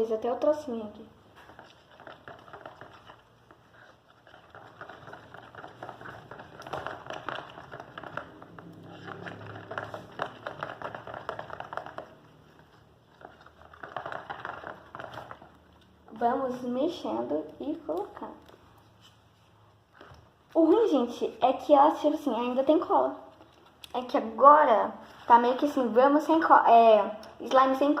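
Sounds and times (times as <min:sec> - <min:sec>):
slime being stirred squelching: 0:00.0 - 0:28.0.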